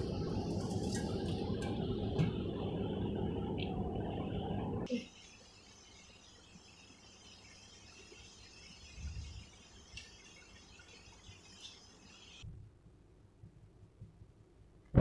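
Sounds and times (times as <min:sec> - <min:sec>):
high-pitched hiss: 0:04.9 - 0:12.4.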